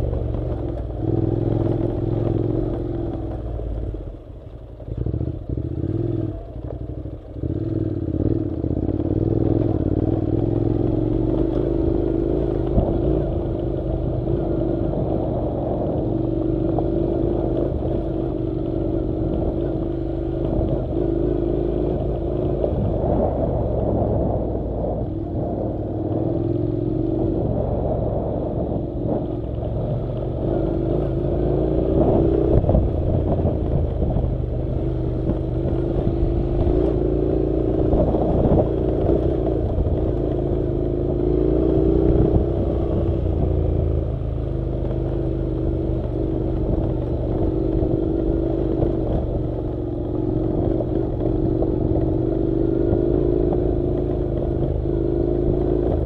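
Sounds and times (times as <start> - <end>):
motorcycle engine running: 0.0 - 56.0.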